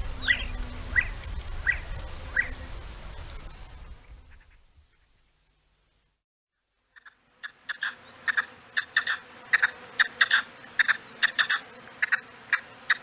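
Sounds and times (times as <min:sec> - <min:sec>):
bird giving clicky calls: 0:07.0 - 0:13.0.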